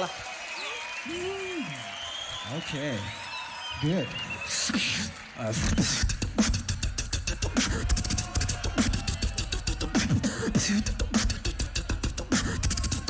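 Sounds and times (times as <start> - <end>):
beatboxing rhythm: 4.3 - 13.0.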